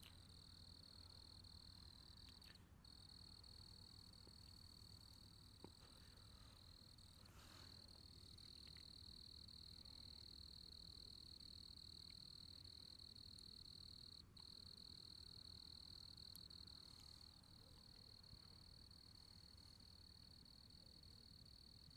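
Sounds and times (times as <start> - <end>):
crickets trilling: 0.0 - 21.9
low background hum: 0.0 - 21.9.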